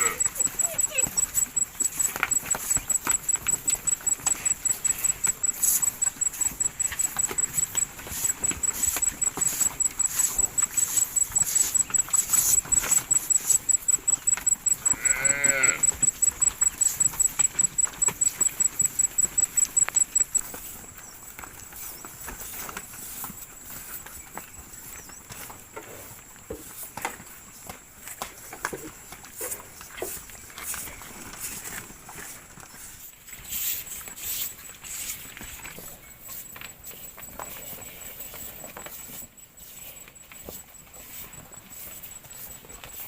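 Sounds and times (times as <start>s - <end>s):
high-pitched pulsing chirping: 0.0s - 20.6s
farm animal call: 0.0s - 20.8s.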